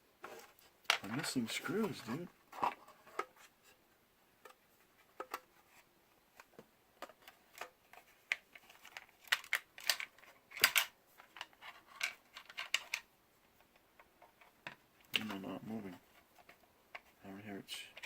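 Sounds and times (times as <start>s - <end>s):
clicks of handling small parts: 6.4s - 13.1s.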